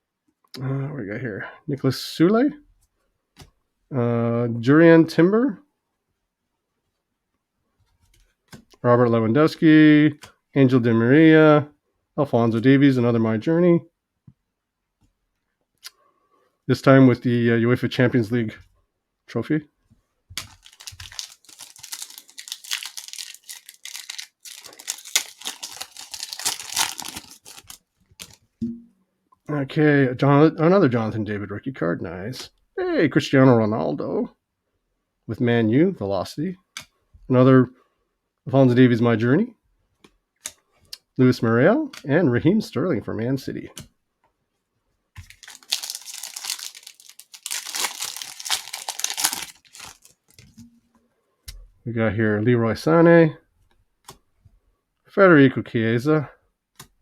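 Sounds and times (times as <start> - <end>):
plastic wrapper crinkling and tearing: 20.4 - 28.4, 45.2 - 50.6.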